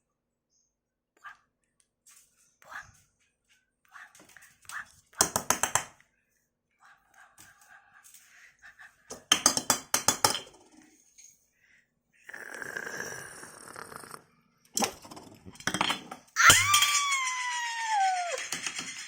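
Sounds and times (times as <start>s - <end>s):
small hard objects clattering: 15.0s - 19.0s.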